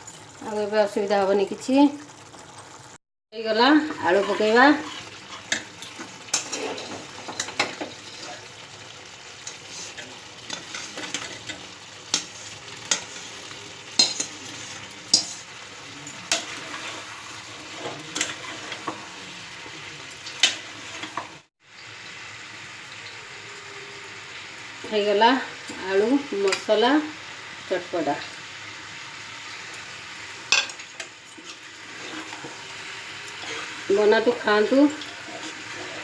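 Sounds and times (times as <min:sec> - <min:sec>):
food sizzling in a pan: 0:00.0 - 0:36.0
spatula scraping a pan: 0:03.7 - 0:08.7, 0:09.4 - 0:21.4, 0:30.5 - 0:36.0.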